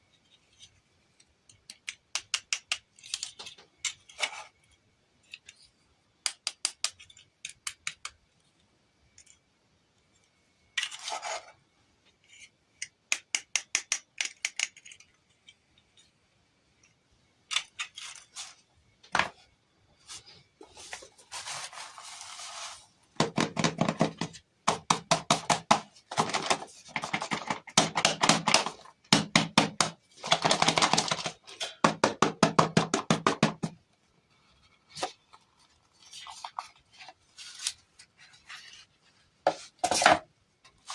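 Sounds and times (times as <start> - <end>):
small objects clicking and tapping: 0.5 - 4.6, 6.2 - 8.3, 12.2 - 16.1, 16.8 - 19.3, 23.2 - 33.8.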